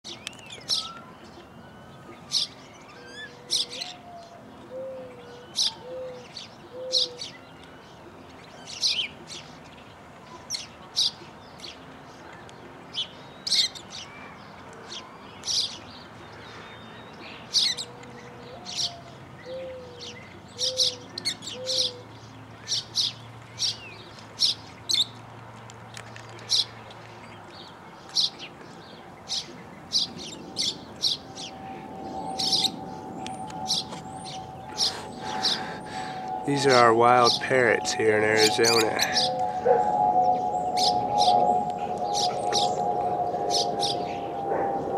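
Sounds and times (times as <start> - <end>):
low three-note call: 31.6 - 44.9
parrots shrieking: 33.7 - 37.4.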